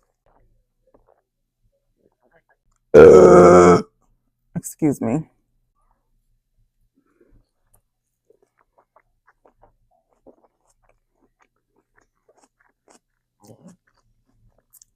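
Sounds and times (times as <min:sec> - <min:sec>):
close-up chewing smacks: 0:07.6 - 0:14.9.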